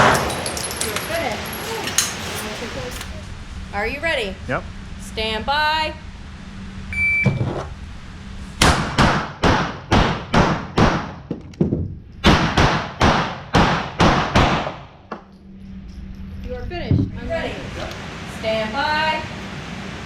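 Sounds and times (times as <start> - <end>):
rapid pistol shots: 8.6 - 11.2, 12.2 - 15.0.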